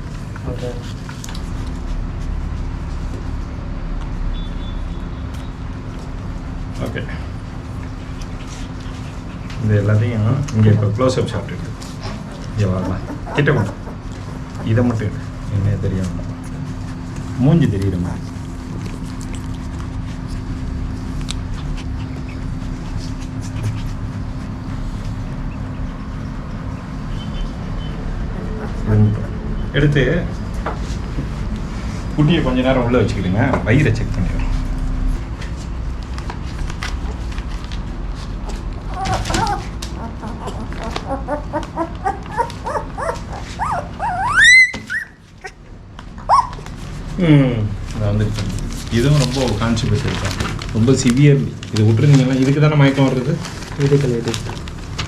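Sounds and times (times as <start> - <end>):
steady low hum: 0.0 - 44.2
dog and puppies vocalizing: 7.6 - 10.1, 11.6 - 29.3, 38.8 - 47.0.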